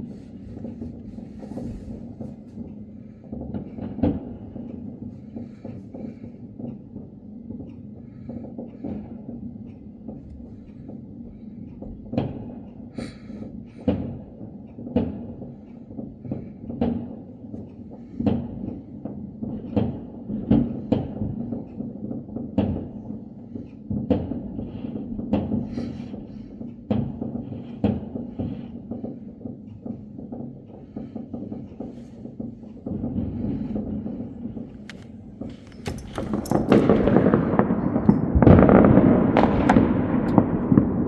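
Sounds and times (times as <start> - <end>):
distant fireworks bangs: 0.0 - 12.7, 23.9 - 41.0.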